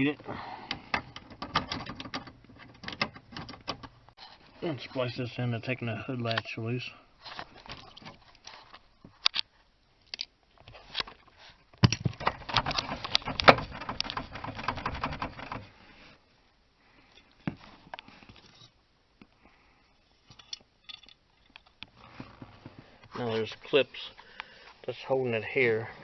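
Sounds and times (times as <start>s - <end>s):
rapid clicks: 12.2s - 15.6s.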